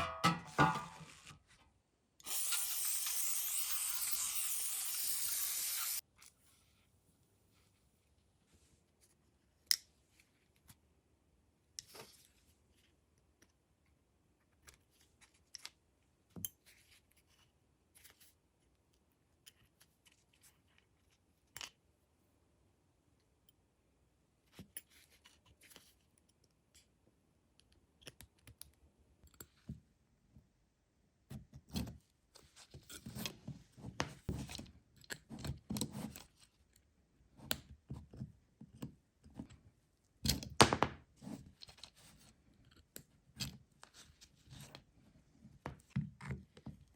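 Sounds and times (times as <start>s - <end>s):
metal scraping and knocks: 0.0s - 1.3s.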